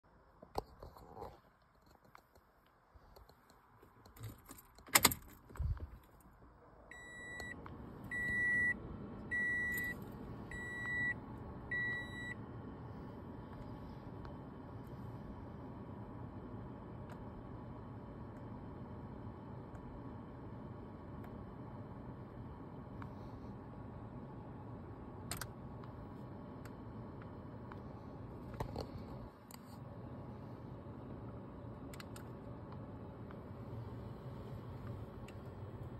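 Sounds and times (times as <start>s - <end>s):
steady low hum: 5.4s - 35.9s
car warning chime beeping: 6.9s - 12.4s.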